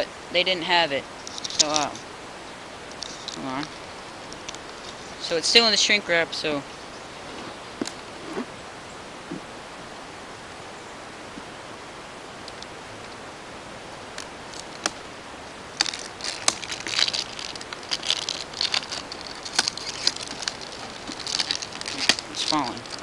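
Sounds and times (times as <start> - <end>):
background hiss: 0.0 - 23.0
shrink wrap crinkling: 3.0 - 3.7, 15.7 - 23.0.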